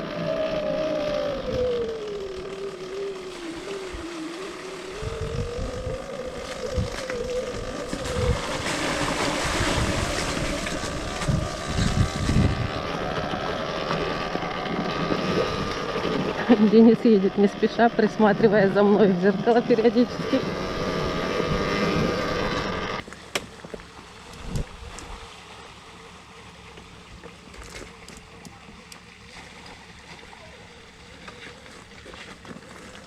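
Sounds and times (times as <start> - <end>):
wind buffeting microphone: 0.0 - 23.0, 24.3 - 25.2
electric motorcycle motor whining: 0.0 - 25.1.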